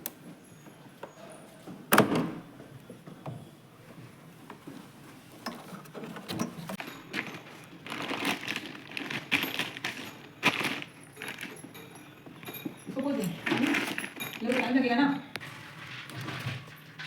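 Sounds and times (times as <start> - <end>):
small hard objects clinking: 6.8 - 15.7.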